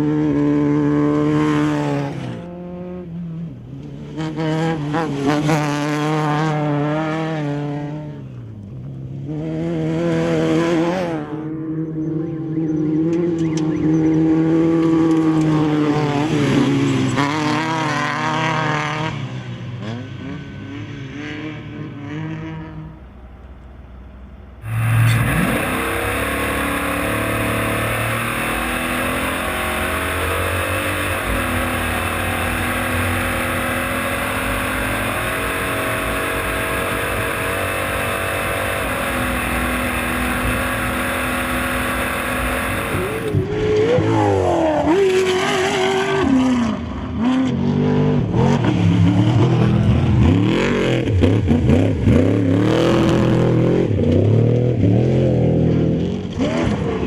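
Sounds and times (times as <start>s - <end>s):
loud steady engine noise: 24.2s - 44.0s
drag racing car engine revving: 24.6s - 57.0s.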